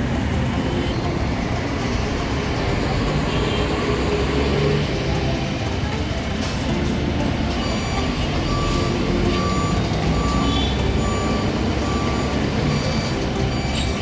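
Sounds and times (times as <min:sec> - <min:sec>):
low traffic rumble: 0:00.0 - 0:14.0
short electronic beeps: 0:07.5 - 0:14.0.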